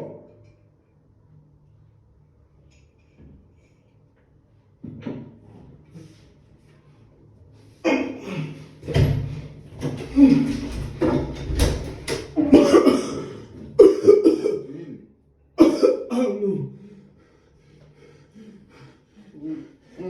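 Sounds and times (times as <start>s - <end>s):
man coughing hard: 12.4s - 15.0s, 15.6s - 16.8s.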